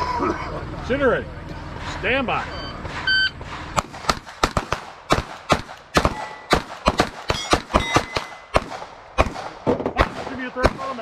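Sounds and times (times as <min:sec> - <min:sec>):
pistol shots: 0:03.5 - 0:11.0.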